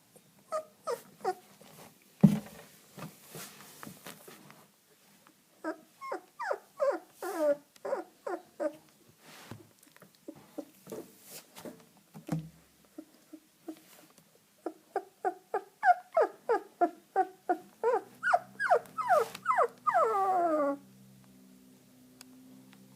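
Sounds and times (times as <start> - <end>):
puppy whimpering: 0.1 - 1.4, 5.6 - 8.8, 14.6 - 20.9.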